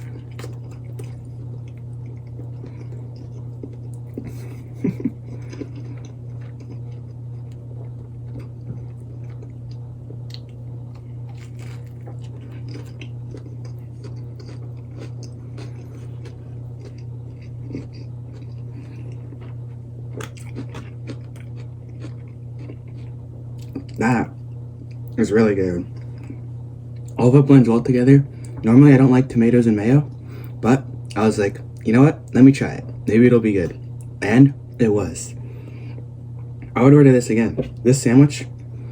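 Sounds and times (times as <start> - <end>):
person chewing food: 0.0 - 25.2, 25.9 - 27.2
steady low hum: 0.0 - 38.9.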